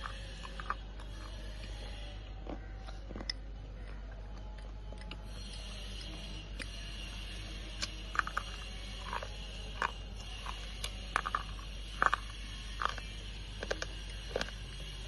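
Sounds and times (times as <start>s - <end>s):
slate pencils crunching: 7.8s - 15.0s.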